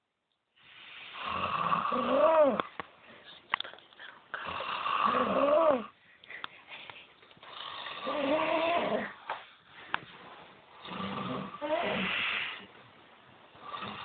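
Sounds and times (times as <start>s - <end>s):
person snoring loudly: 1.1s - 2.6s, 4.4s - 5.9s, 7.5s - 9.2s, 10.8s - 12.6s, 13.6s - 14.0s.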